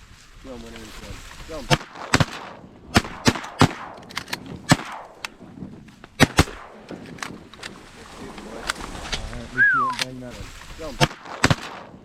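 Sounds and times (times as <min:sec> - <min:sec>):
shotgun shots: 0:01.6 - 0:05.4, 0:06.2 - 0:07.3, 0:10.9 - 0:12.0.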